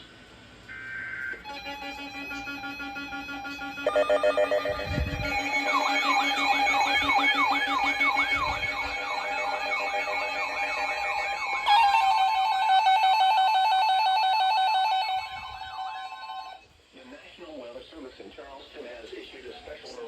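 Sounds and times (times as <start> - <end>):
electronic emergency alert tones: 0.7 - 16.6.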